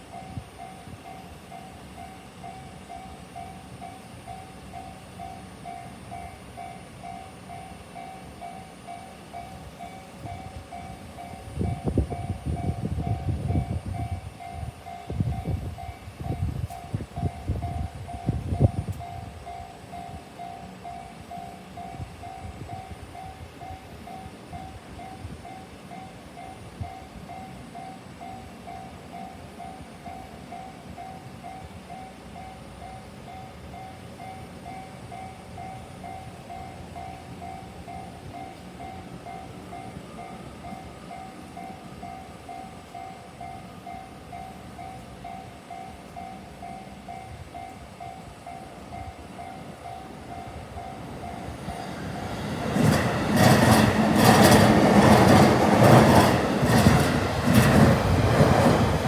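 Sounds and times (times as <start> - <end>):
train rumbling: 0.0 - 59.0
train wheels knocking on rail joints: 50.7 - 59.0.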